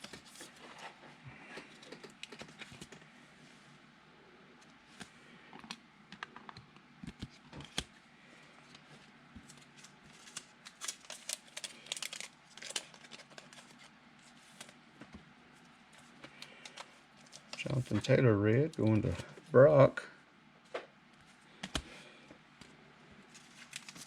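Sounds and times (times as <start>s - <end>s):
cards clicking and tapping: 21.6s - 21.9s.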